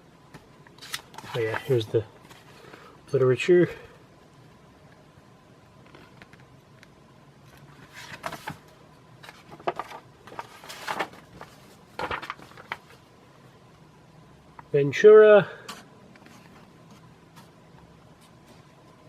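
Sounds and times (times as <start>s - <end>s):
faint steady hum: 0.0s - 19.0s
paper pages rustling: 0.8s - 2.5s, 7.5s - 13.0s.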